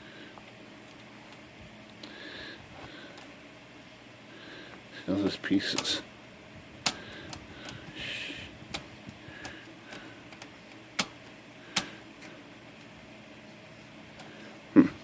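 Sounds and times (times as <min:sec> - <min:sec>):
typewriter metal clicks and taps: 0:10.4 - 0:11.2.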